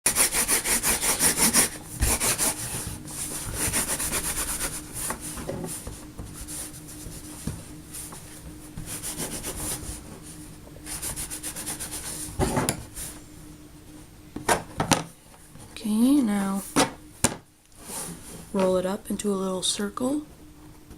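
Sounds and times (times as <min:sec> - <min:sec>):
hands rubbing play dough on surface: 0:00.1 - 0:10.0, 0:10.9 - 0:12.4.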